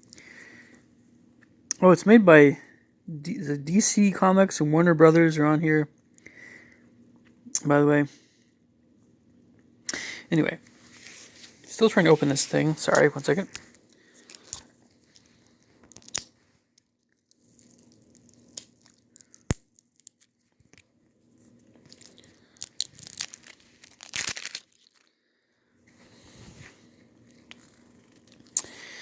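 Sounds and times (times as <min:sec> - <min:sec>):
plastic wrapping crinkling: 0:10.7 - 0:25.2, 0:25.9 - 0:29.0.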